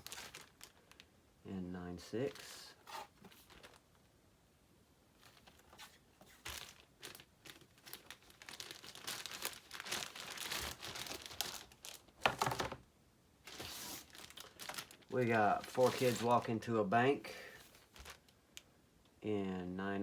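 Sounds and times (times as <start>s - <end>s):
packaging crinkling and tearing: 0.0s - 1.1s, 2.3s - 3.9s, 5.2s - 12.8s, 13.5s - 16.6s, 17.7s - 18.4s.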